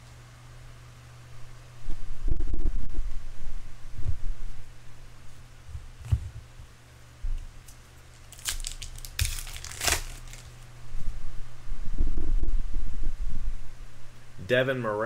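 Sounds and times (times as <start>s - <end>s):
wrapper crinkling: 8.1s - 10.7s.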